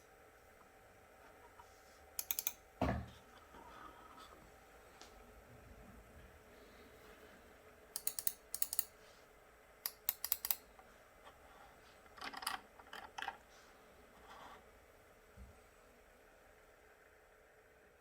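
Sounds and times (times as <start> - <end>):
computer keyboard typing: 2.2 - 2.6, 8.0 - 8.9, 9.9 - 10.6.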